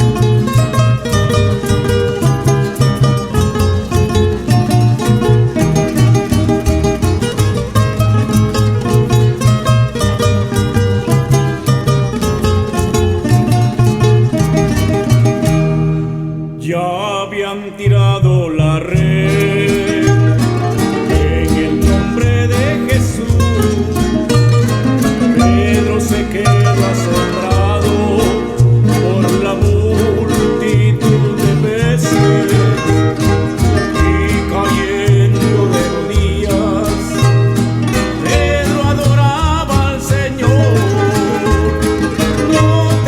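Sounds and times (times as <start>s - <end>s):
voices singing: 0.0s - 3.3s, 16.6s - 43.0s
guitars playing: 0.0s - 17.1s, 17.8s - 43.0s
repeating bass line: 0.0s - 43.0s.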